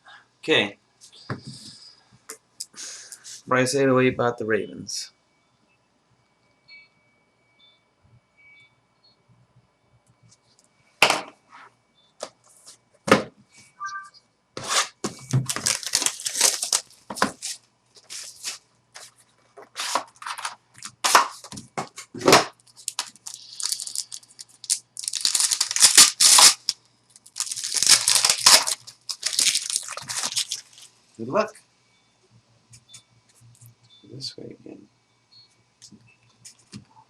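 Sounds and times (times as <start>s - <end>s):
packaging being torn open: 15.4s - 17.6s, 22.7s - 30.9s.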